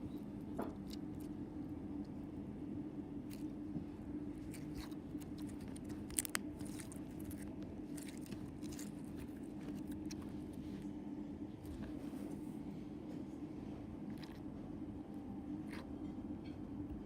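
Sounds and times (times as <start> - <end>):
steady low hum: 0.0 - 17.0
slime being squished: 4.4 - 10.3.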